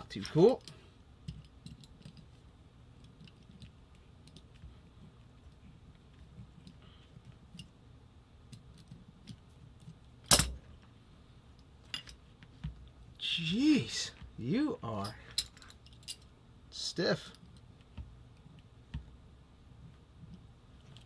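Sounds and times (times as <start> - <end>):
metal parts clicking and clinking: 0.0 - 2.4, 10.2 - 10.6, 11.6 - 12.3, 14.9 - 16.3.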